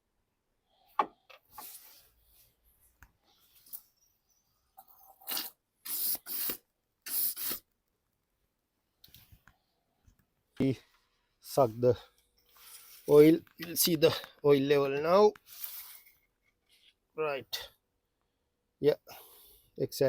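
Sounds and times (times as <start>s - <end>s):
hissing bursts of air: 5.2s - 7.7s.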